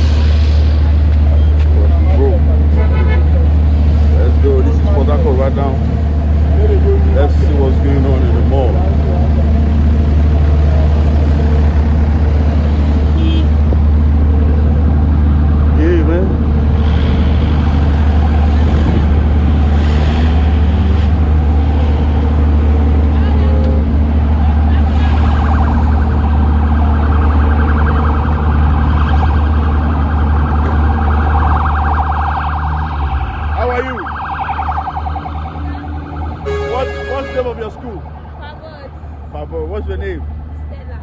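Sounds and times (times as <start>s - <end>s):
street traffic rumble: 0.0s - 41.0s
warbling electronic siren tone: 24.3s - 36.5s.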